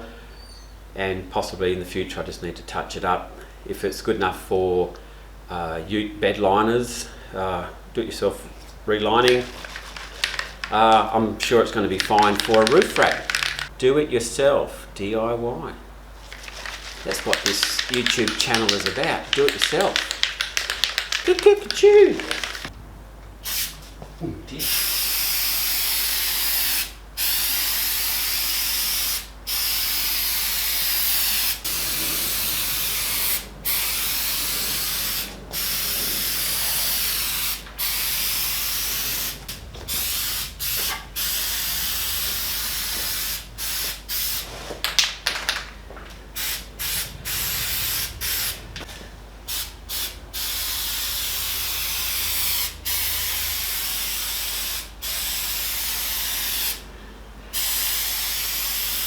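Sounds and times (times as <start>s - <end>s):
aerosol spray hissing: 9.2s - 13.7s, 16.2s - 22.7s, 24.6s - 44.8s, 46.3s - 48.8s, 49.5s - 56.8s, 57.5s - 59.0s.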